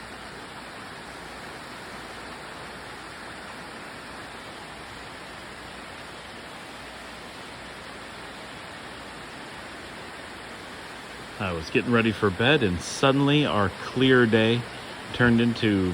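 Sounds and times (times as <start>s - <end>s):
heavy rain falling: 9.0s - 15.9s.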